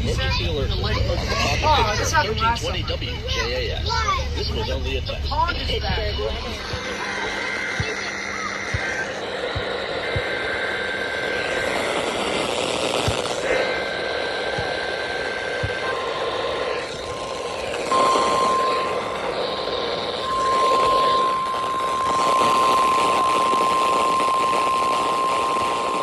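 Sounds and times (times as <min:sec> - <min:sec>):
steady electronic alert tone: 0:14.6 - 0:24.5.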